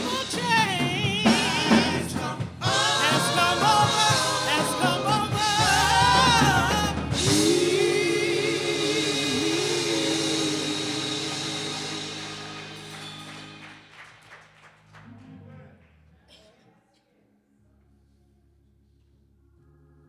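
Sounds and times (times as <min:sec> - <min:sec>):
gospel singing: 0:00.0 - 0:13.9
instrumental accompaniment: 0:00.0 - 0:15.0.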